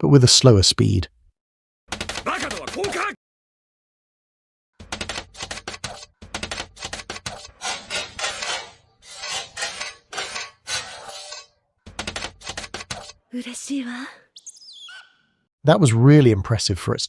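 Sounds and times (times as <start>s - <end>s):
chalk scraping on chalkboard: 5.4s - 11.5s, 12.4s - 13.2s.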